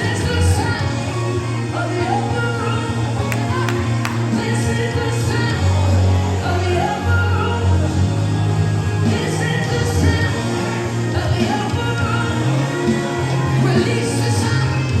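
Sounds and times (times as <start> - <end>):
worship band music: 0.9 - 5.2.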